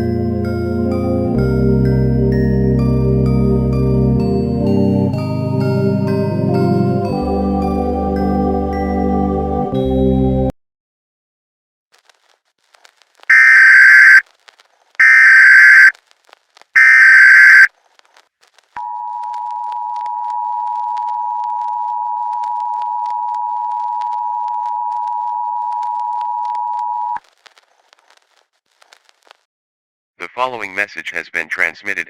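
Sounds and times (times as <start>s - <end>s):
two-tone attention signal: 13.3s - 14.2s, 15.0s - 15.9s, 16.8s - 17.7s
warbling digital data tone: 13.3s - 14.2s, 15.0s - 15.9s, 16.8s - 17.7s.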